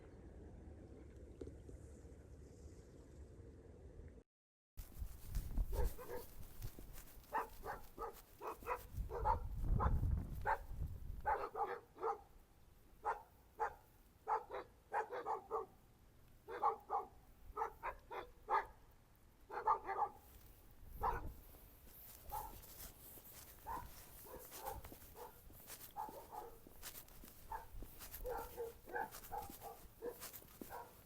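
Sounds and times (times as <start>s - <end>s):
dog barking: 5.7s - 6.4s, 7.2s - 12.4s, 13.0s - 15.8s, 16.4s - 18.8s, 19.5s - 20.3s, 21.0s - 21.4s, 22.2s - 31.0s.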